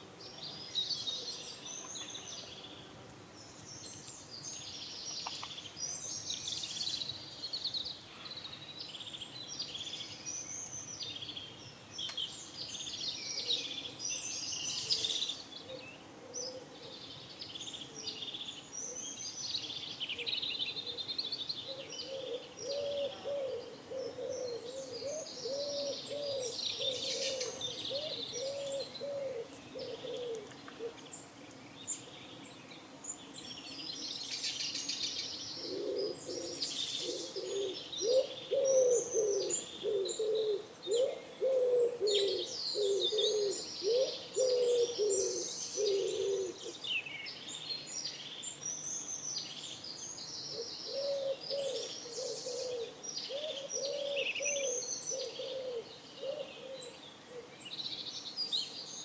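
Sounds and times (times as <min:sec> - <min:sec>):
songbirds chirping: 0:00.0 - 0:59.0
pigeons cooing: 0:21.7 - 0:31.0, 0:35.6 - 0:46.8, 0:50.6 - 0:57.5.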